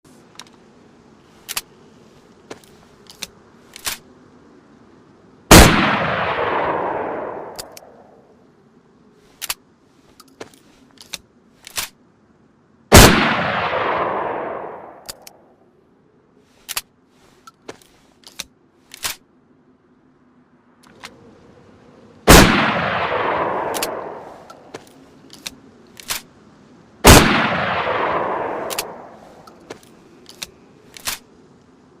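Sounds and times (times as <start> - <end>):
shotgun shots echoing: 5.5 - 8.2, 12.9 - 15.0, 22.3 - 24.5, 27.0 - 29.2
shotgun action clicking: 6.4 - 8.0, 13.5 - 15.4, 22.9 - 26.3, 27.5 - 31.3.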